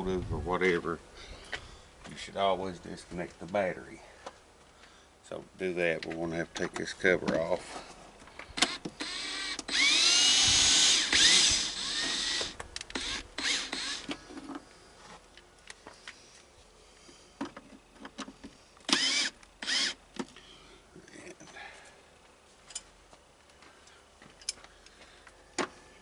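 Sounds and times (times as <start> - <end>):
power drill whining: 8.5 - 14.2, 18.9 - 20.0.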